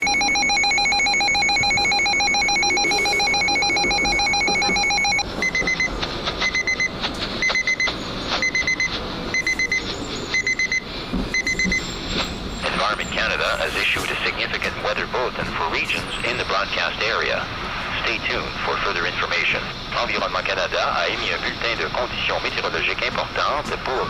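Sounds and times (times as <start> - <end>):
weather alert alarm buzzing and beeping: 0.0 - 12.6.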